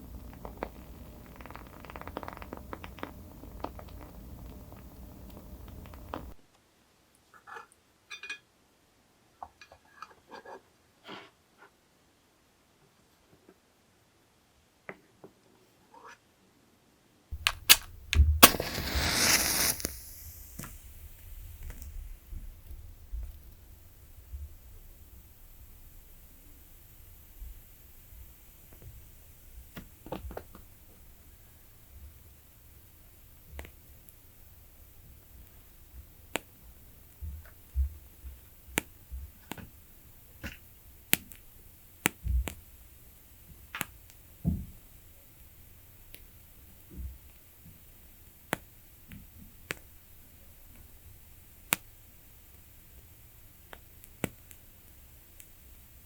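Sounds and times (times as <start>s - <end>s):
candle wick crackling: 0.0s - 6.4s, 17.3s - 56.0s
candle hiss: 0.0s - 6.5s, 17.3s - 56.0s.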